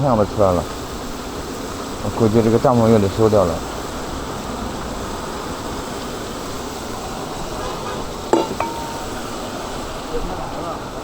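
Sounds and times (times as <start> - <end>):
metallic clink: 8.3 - 9.4.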